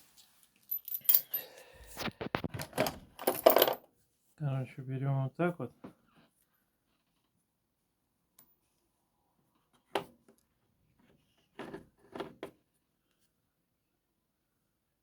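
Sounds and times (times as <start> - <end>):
parts clattering during repair: 2.6 - 3.9.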